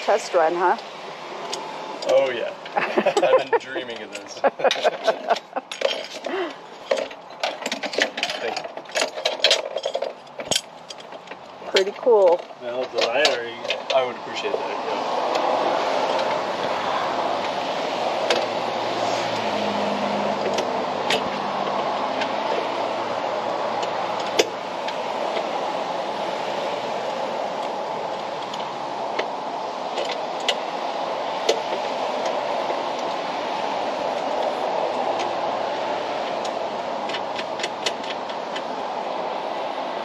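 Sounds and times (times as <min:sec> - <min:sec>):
hand tools clinking: 0:01.4 - 0:14.6
steady rushing noise: 0:13.4 - 0:40.0.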